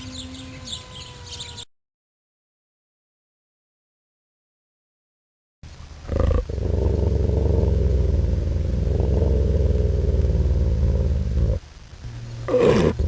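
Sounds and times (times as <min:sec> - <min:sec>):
wolf growling: 0:06.0 - 0:11.6, 0:12.5 - 0:13.0.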